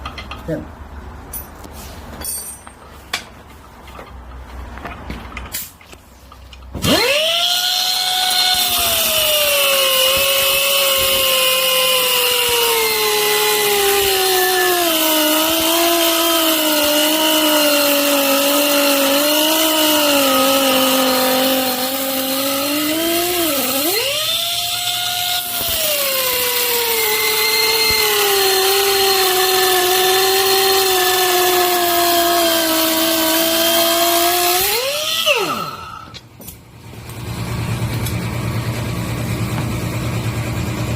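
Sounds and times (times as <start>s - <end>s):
pneumatic angle grinder grinding: 6.7s - 36.3s.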